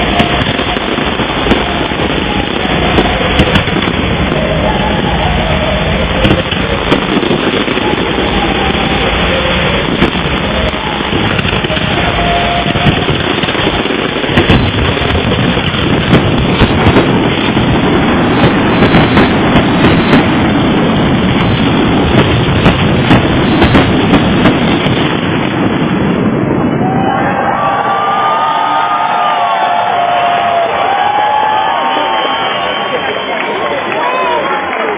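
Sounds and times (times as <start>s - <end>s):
fireworks bangs and crackling: 0.0s - 34.9s.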